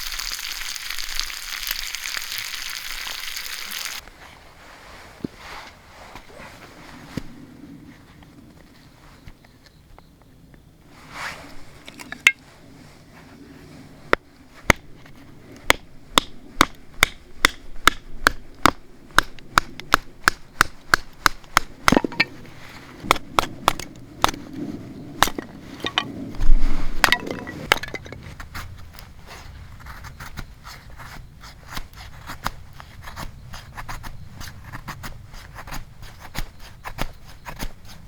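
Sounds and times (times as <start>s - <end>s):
sharp knocks: 20.0s - 22.4s.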